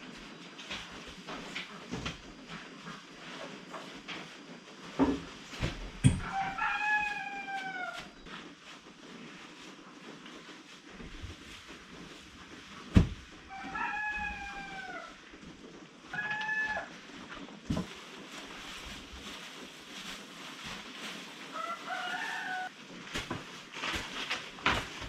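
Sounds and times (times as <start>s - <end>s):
rooster crowing: 6.2s - 8.1s, 13.5s - 15.2s, 21.5s - 22.7s.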